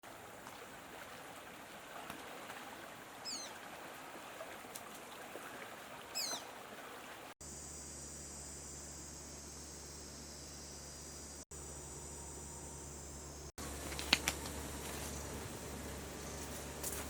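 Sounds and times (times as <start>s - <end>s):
water-like noise: 0.0s - 7.4s
bird whistle: 3.2s - 3.5s, 6.2s - 6.4s
insect drone: 7.4s - 17.0s
low hum: 7.5s - 17.0s.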